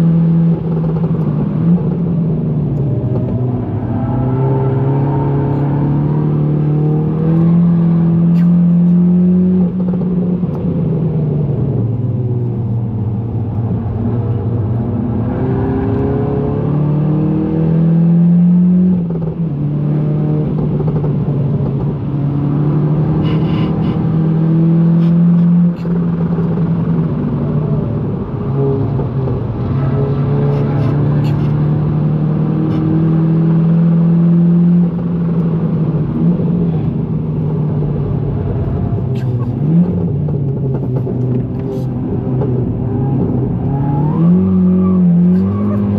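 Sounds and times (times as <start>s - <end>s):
car engine accelerating hard: 0.0s - 45.9s.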